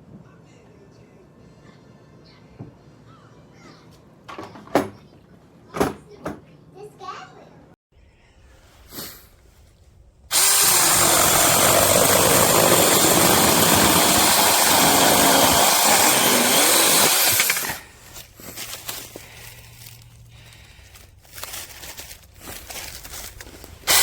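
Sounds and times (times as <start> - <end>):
electric mini chainsaw running: 10.3 - 17.9.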